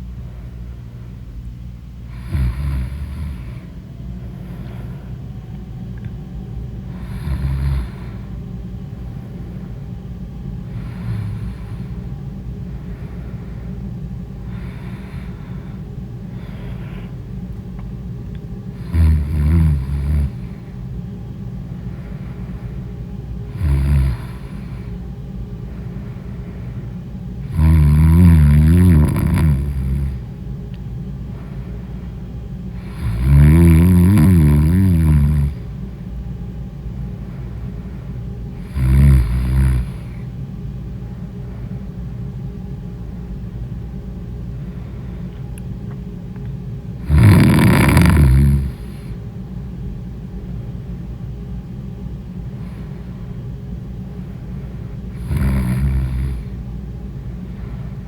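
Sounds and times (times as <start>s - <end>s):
steady low hum: 0.0s - 58.0s
loud snoring: 2.1s - 3.7s, 6.9s - 8.2s, 10.7s - 11.9s, 18.8s - 20.6s, 23.5s - 24.9s, 27.4s - 30.2s, 32.8s - 35.7s, 38.6s - 40.2s, 47.0s - 49.1s, 55.2s - 56.5s.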